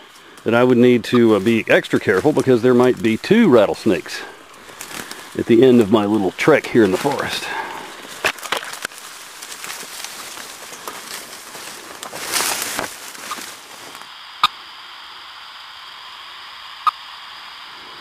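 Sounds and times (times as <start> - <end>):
footsteps through undergrowth: 0.0 - 14.1
radio receiver static hiss: 0.0 - 18.0.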